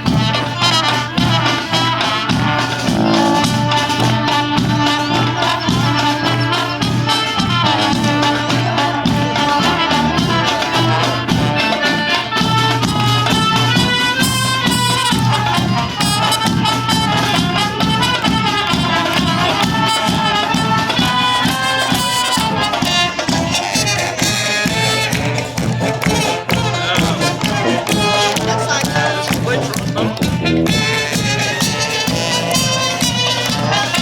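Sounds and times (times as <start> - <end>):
band playing brass melody: 0.0 - 34.0.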